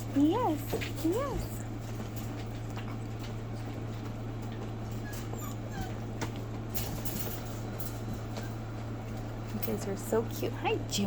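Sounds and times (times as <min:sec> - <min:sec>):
steady low hum: 0:00.0 - 0:11.0
puppies whimpering: 0:04.5 - 0:06.5.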